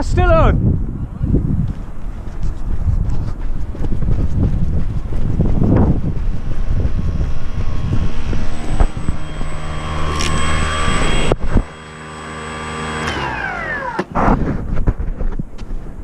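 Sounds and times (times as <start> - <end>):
wind buffeting microphone: 0.0 - 11.8, 14.1 - 16.0
model plane motor whine: 5.1 - 14.4.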